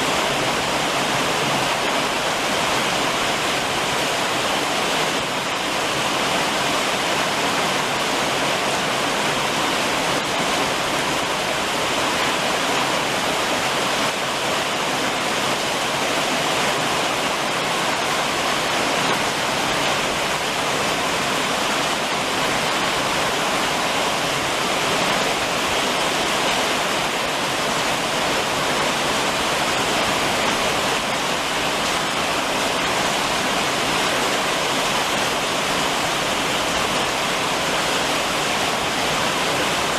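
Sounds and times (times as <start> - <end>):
rain falling on a roof: 0.0 - 39.9.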